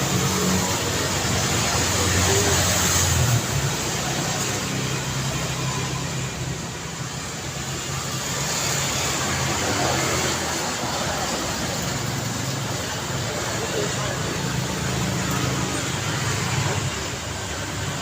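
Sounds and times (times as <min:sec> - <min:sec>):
city street traffic: 0:00.0 - 0:18.0.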